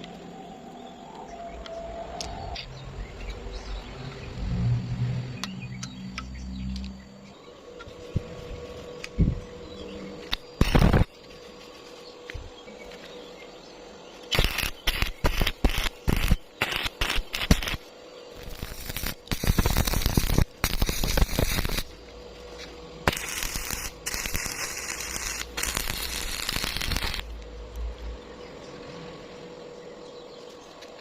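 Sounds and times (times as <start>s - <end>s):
electric arc welding crackling: 10.3s - 12.0s, 14.2s - 27.3s.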